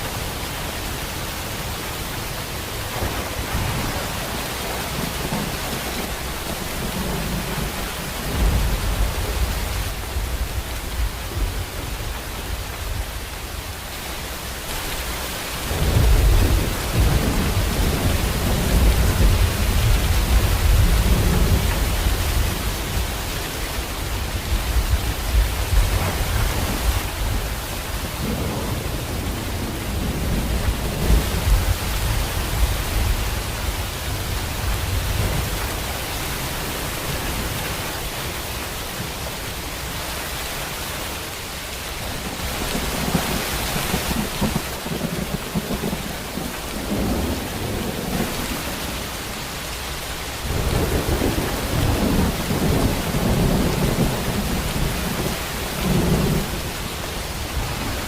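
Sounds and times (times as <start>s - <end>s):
heavy rain: 0.0s - 58.0s
rolling thunder: 50.4s - 58.0s.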